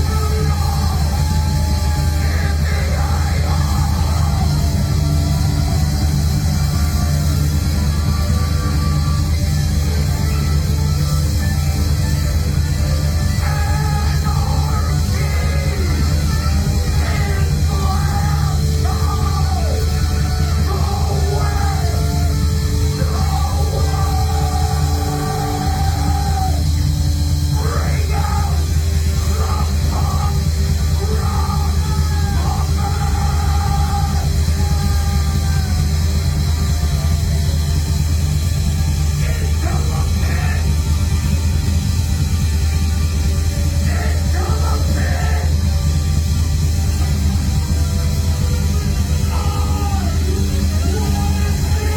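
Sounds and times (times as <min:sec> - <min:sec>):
heavy rock band playing: 0:00.0 - 0:51.9
yelled vocals: 0:00.0 - 0:51.9.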